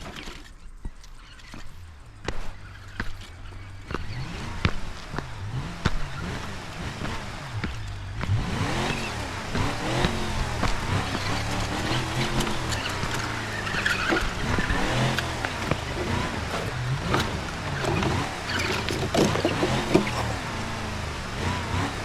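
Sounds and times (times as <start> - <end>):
engine revving sound effect: 3.9 - 22.0
sharp clicks and knocks: 7.6 - 20.6.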